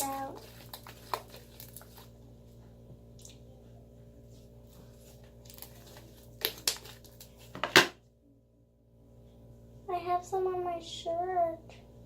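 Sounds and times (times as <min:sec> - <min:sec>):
slime squelching in hands: 0:00.0 - 0:02.5, 0:04.8 - 0:07.5.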